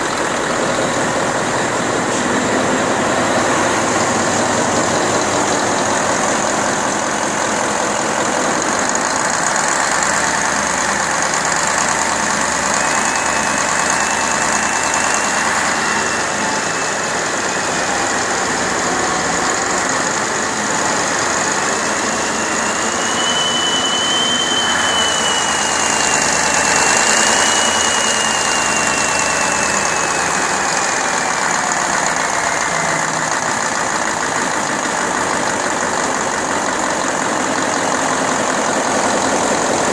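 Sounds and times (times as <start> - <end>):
diesel engine running: 0.0 - 39.9
thin whistle: 10.2 - 20.0, 20.9 - 33.3.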